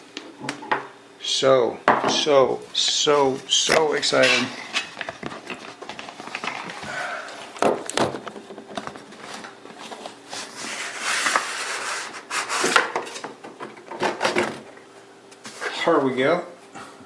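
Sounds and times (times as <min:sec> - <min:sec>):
packaging rustling and scraping: 0:04.0 - 0:07.6, 0:08.2 - 0:13.3.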